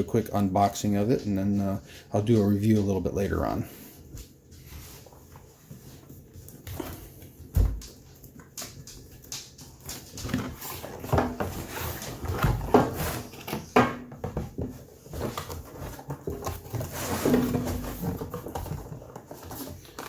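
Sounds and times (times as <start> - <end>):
cardboard and foam packaging handled: 4.0 - 20.0.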